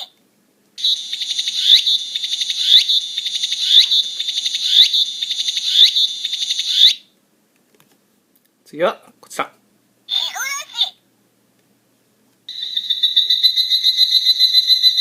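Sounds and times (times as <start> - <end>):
recorded cicada song from speaker: 0.8 - 7.1, 12.5 - 15.0.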